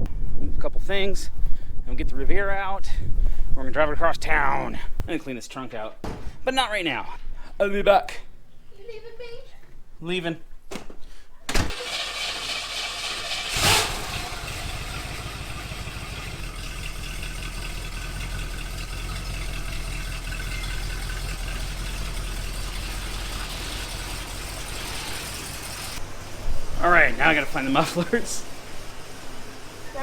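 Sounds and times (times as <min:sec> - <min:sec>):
car engine idling: 0:11.7 - 0:26.0.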